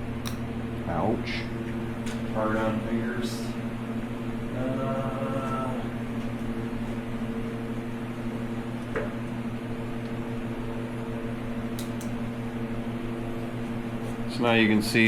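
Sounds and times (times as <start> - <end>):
electrical motor hum: 0.0 - 15.0
light click: 11.8 - 12.2.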